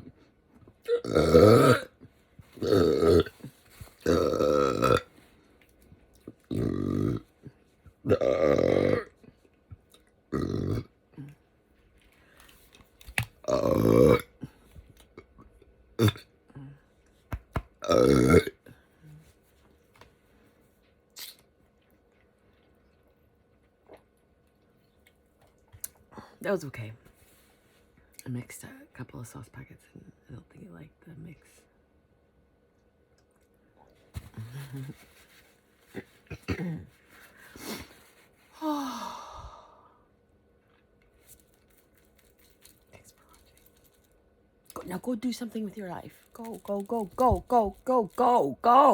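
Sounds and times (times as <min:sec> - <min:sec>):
loud burp: 0:00.9 - 0:01.9, 0:02.6 - 0:03.4, 0:04.0 - 0:05.1, 0:06.5 - 0:07.2, 0:08.0 - 0:09.1, 0:10.3 - 0:10.9, 0:13.4 - 0:14.4, 0:16.0 - 0:16.3, 0:17.8 - 0:18.6
faint mouth and eating noises: 0:20.6 - 0:26.1, 0:40.5 - 0:45.0
breathy sounds: 0:37.1 - 0:40.1
person sighing: 0:38.5 - 0:40.0.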